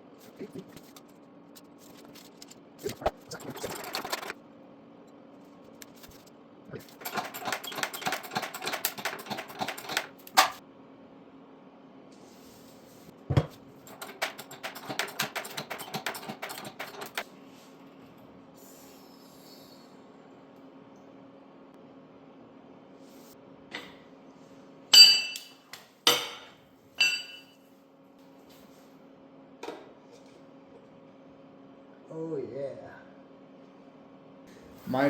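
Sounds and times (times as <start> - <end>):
rapid metallic ratchet clicking: 13.9 - 17.2.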